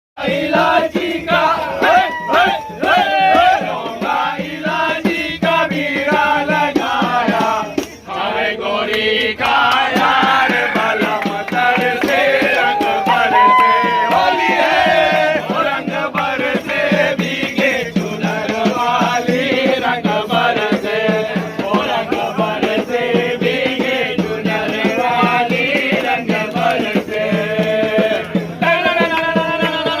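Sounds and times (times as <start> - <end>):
rattling percussion: 0.2 - 8.6, 9.2 - 30.0
men singing and chanting: 0.2 - 30.0
people clapping: 1.0 - 3.6, 7.8 - 17.1, 25.6 - 30.0.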